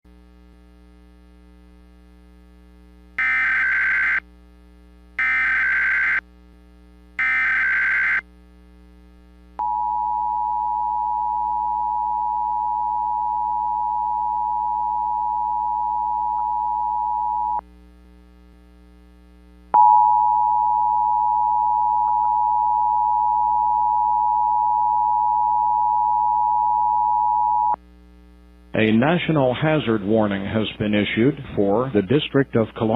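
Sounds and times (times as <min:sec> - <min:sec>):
faint steady hum: 0:00.1 - 0:32.9
steady attention tone: 0:09.6 - 0:17.6, 0:19.8 - 0:27.8.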